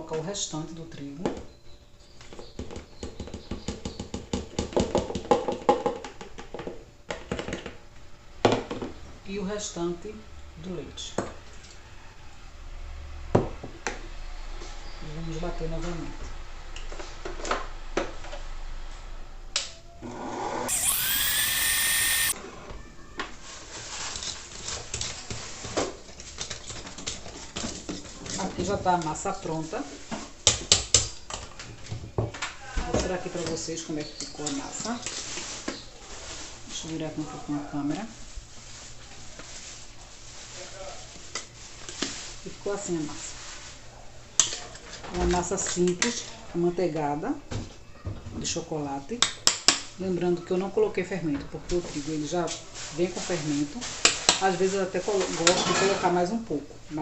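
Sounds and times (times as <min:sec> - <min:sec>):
electric mixer motor whine: 0:20.7 - 0:22.4.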